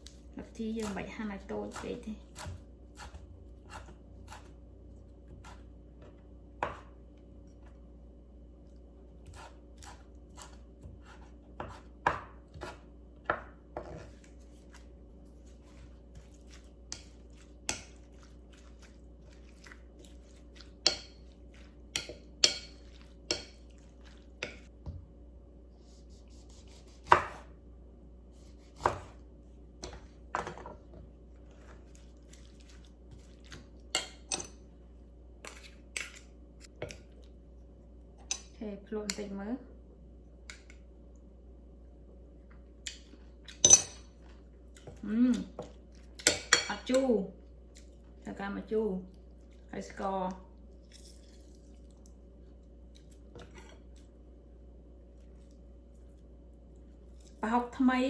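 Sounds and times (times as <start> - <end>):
faint steady hum: 0.0 - 58.0
knife cutting on chopping board: 26.3 - 27.5.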